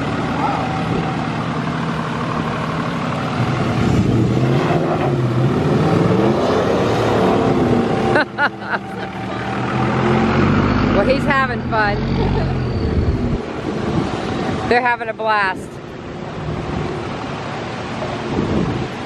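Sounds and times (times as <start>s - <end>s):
truck engine revving: 0.0s - 14.8s.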